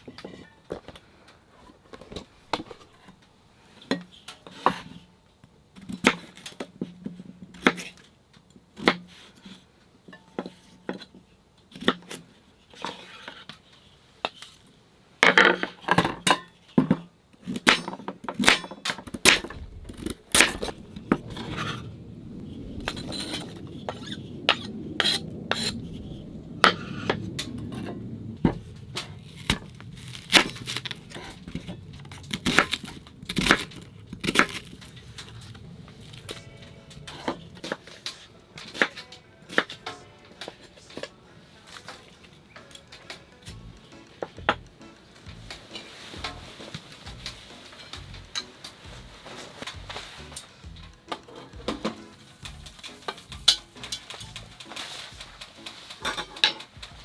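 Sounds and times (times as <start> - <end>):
low rushing noise: 19.0 - 42.6
metal cookware clinking: 51.1 - 57.0.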